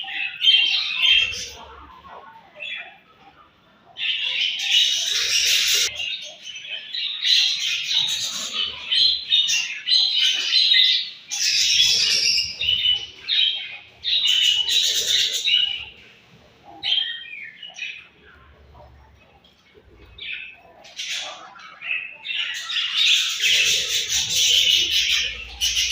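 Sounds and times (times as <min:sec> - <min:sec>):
budgerigars chirping and chattering: 0:00.0 - 0:25.9.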